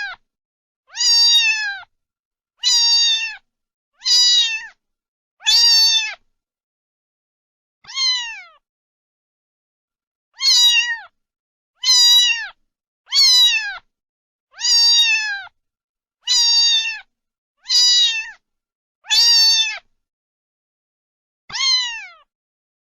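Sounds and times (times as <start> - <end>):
cat meowing: 0.0 - 0.2, 0.9 - 1.9, 2.6 - 4.8, 5.4 - 6.2, 7.8 - 8.6, 10.4 - 11.2, 11.8 - 13.9, 14.5 - 15.6, 16.2 - 18.4, 19.0 - 19.9, 21.5 - 22.3.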